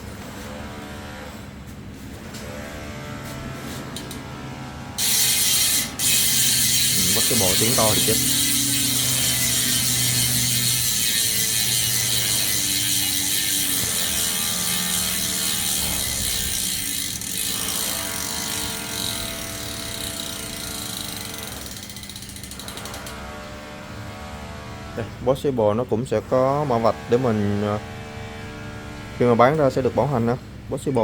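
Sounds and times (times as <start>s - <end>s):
bicycle freehub ratcheting: 3.9s - 4.2s, 5.0s - 23.2s.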